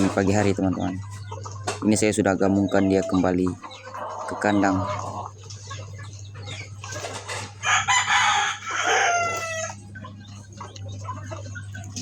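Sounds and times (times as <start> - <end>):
rooster crowing: 7.6 - 9.8.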